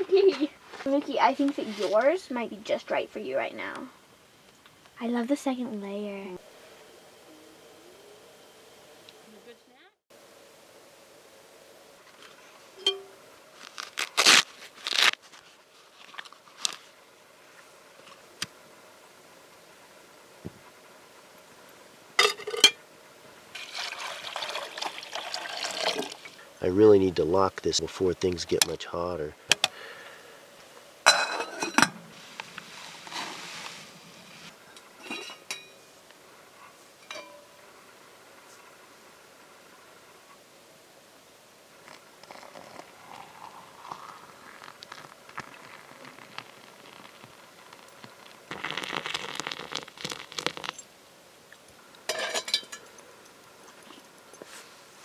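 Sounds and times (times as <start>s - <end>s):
metal cookware clinking: 12.8s - 13.2s, 22.2s - 22.8s, 31.1s - 32.0s, 35.1s - 35.8s, 37.0s - 37.5s, 52.1s - 53.0s
ringing metal knock: 12.8s - 13.2s
crunching bites into chips: 44.0s - 50.8s.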